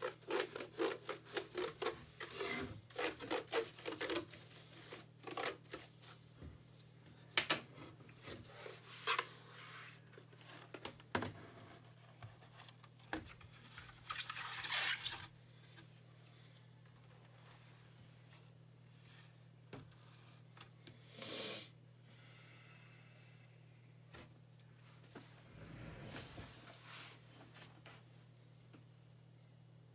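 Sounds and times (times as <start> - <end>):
scraping tearing noise: 0.0 - 6.2.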